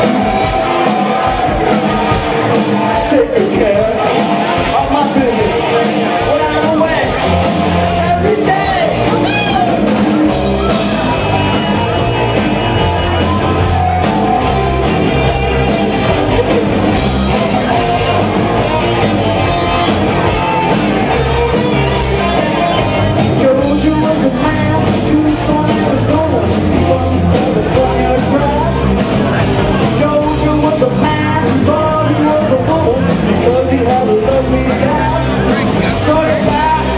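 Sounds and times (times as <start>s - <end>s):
live rock band playing: 0.0s - 36.9s
steady drumbeat: 0.0s - 36.9s
person singing: 20.2s - 29.0s, 29.7s - 36.9s.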